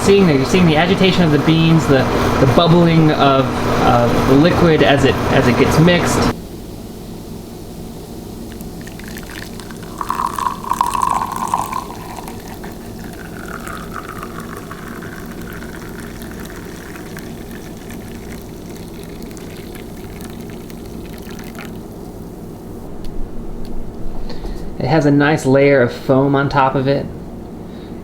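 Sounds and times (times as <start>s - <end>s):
steady low hum: 0.0s - 28.0s
coffee pouring into cup: 8.5s - 22.6s.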